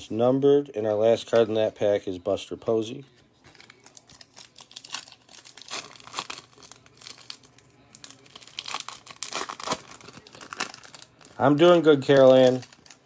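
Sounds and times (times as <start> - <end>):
card pack wrapper crinkling: 3.5 - 13.0.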